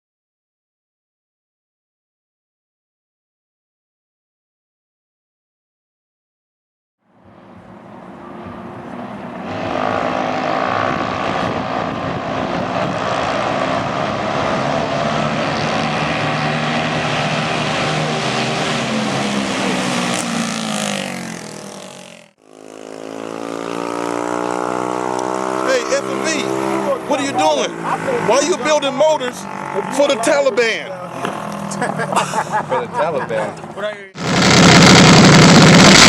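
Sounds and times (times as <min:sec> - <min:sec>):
small motorcycle engine revving: 0:07.3 - 0:32.2.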